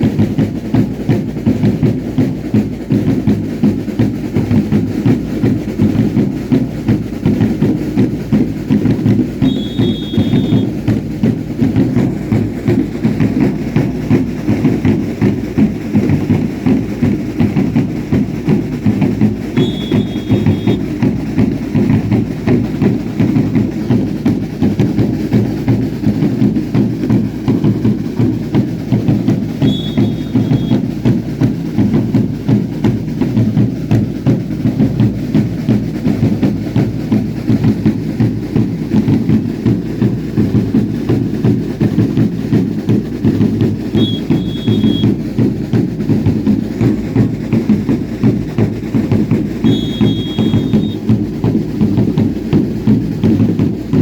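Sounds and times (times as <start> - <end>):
drums beating steady rhythm: 0.0 - 54.0
short high whistle: 9.4 - 10.8, 19.5 - 21.0, 29.5 - 30.9, 43.9 - 45.2, 49.6 - 51.1.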